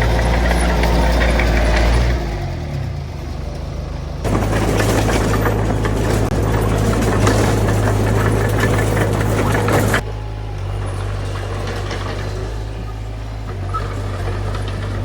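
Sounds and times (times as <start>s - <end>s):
rapid metallic clatter: 0.0s - 10.1s
bulldozer diesel engine running: 0.0s - 15.0s.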